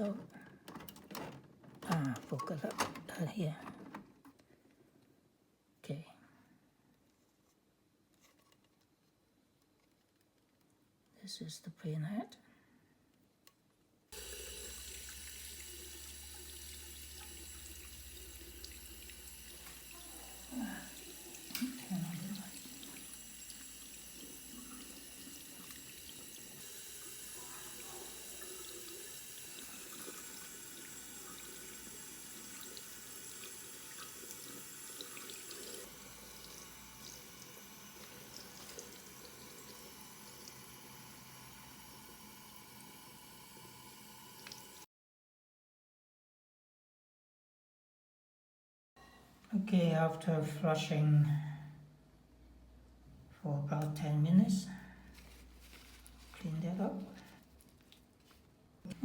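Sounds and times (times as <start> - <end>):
tap water running: 0.0 - 2.8, 14.2 - 44.9.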